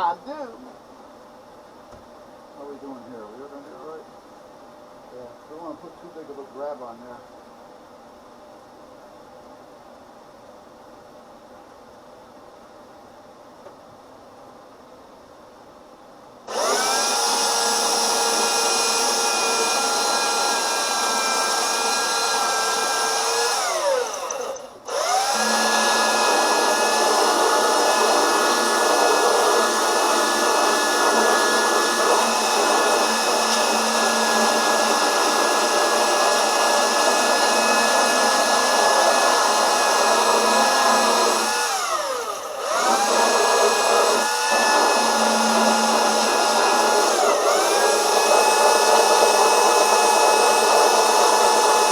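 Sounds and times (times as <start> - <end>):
electric power sander running: 16.5 - 51.9.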